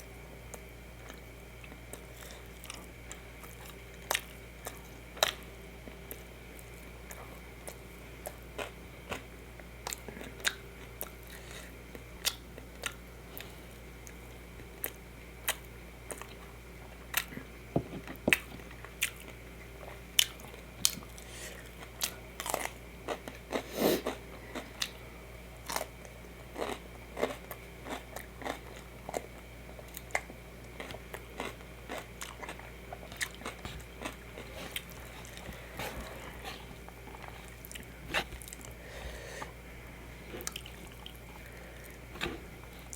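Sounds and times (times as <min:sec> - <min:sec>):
person chewing and crunching: 0:00.5 - 0:25.0, 0:25.6 - 0:39.6, 0:40.3 - 0:42.9.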